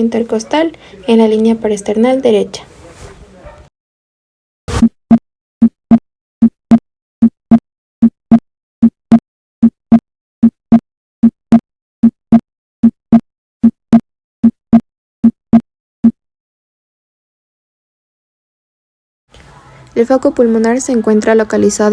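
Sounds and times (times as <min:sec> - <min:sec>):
heartbeat lub-dub thumps: 0:05.6 - 0:07.4, 0:09.6 - 0:16.2.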